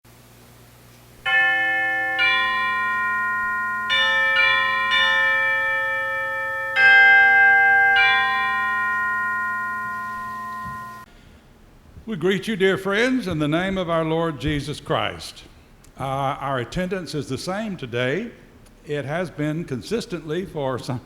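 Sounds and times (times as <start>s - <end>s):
bell chimes playing a tune: 1.3s - 11.1s.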